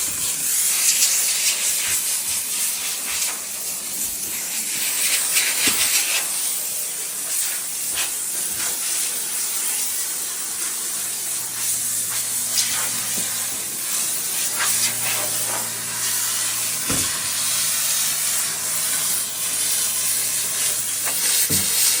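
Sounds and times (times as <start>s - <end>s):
steam cleaner jet hissing: 0.0s - 22.0s.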